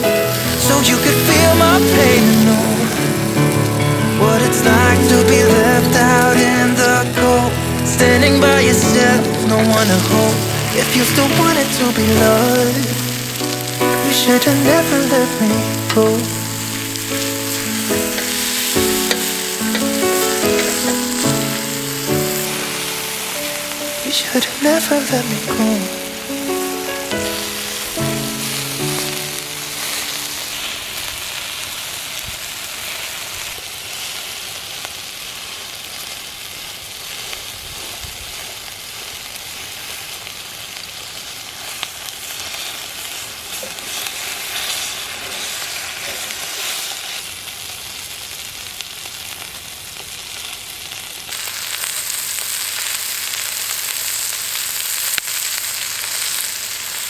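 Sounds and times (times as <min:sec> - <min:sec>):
song music: 0:00.0 - 0:30.9
meat sizzling on a griddle: 0:00.0 - 0:57.0.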